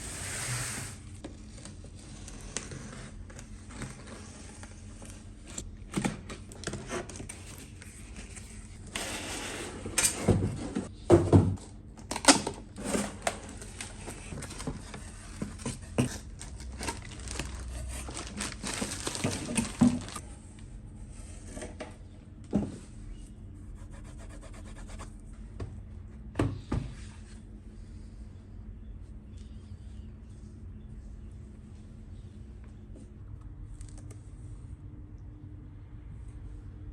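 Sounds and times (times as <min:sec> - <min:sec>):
packaging rubbing and scraping: 0:12.8 - 0:20.2.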